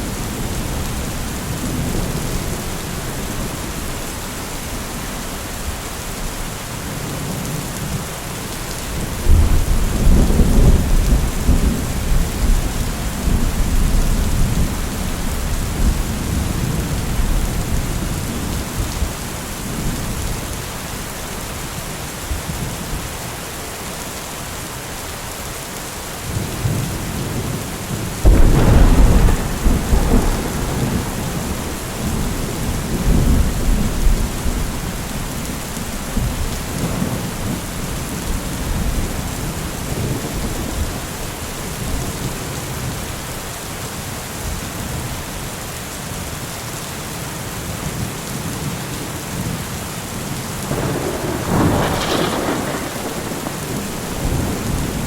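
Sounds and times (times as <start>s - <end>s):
steady rain falling: 0.0s - 55.0s
thunder rolling: 28.2s - 41.0s, 50.7s - 55.0s.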